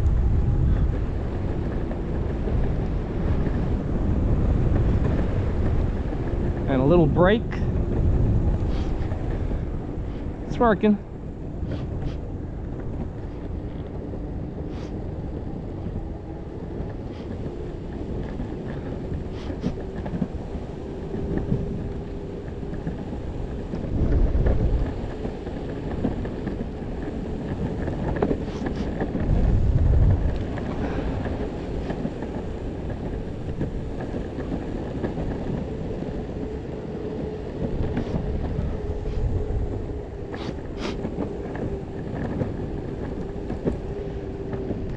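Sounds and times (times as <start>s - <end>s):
wheels rumbling on pavement: 0.0s - 44.9s
wind buffeting microphone: 0.0s - 44.9s.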